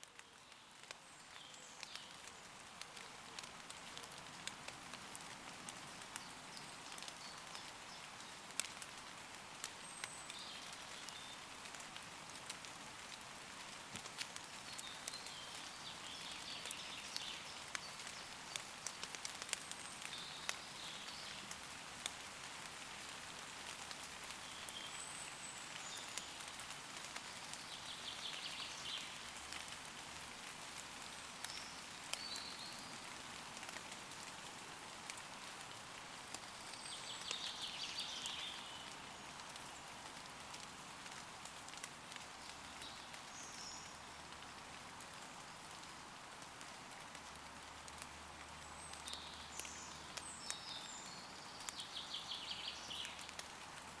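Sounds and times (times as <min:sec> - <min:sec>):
rain falling on leaves: 0:00.0 - 0:54.0
raindrops ticking: 0:00.0 - 0:54.0
woodland birds singing: 0:00.2 - 0:02.5, 0:09.8 - 0:11.4, 0:14.6 - 0:21.5, 0:24.4 - 0:26.5, 0:27.2 - 0:29.2, 0:31.4 - 0:33.0, 0:36.6 - 0:39.9, 0:42.4 - 0:44.0, 0:48.6 - 0:53.5.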